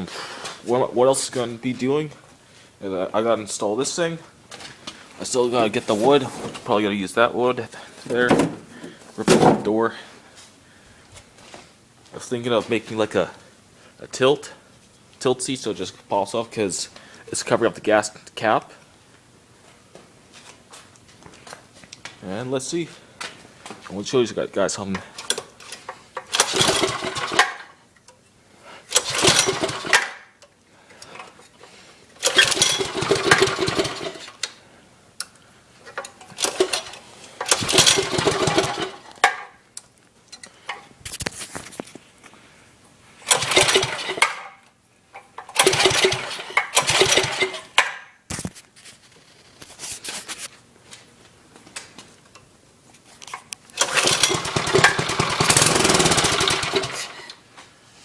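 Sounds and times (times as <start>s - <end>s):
small engine cranking: 26.2s - 27.7s, 28.9s - 30.2s, 32.2s - 34.4s, 36.3s - 39.1s, 43.2s - 44.4s, 45.5s - 47.8s, 53.8s - 57.4s.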